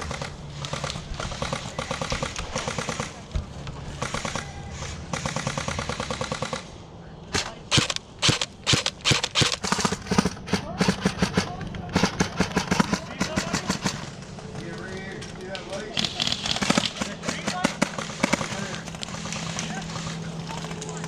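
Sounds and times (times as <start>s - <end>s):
airsoft full-auto bursts: 0.0s - 3.2s, 3.9s - 14.1s, 16.0s - 20.7s
airsoft shots: 3.9s - 4.5s, 5.1s - 6.7s, 7.3s - 14.1s, 16.0s - 18.8s.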